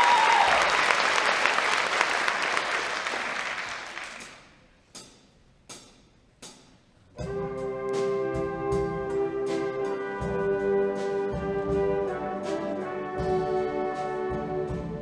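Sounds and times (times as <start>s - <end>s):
audience applauding: 0.0s - 4.5s.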